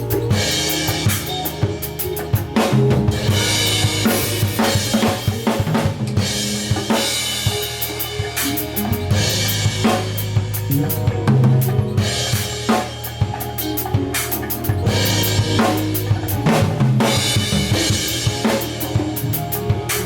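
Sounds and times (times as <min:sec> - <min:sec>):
sustained low bass notes: 0:00.0 - 0:06.9, 0:08.2 - 0:19.9
drum kit playing a groove: 0:00.0 - 0:20.0.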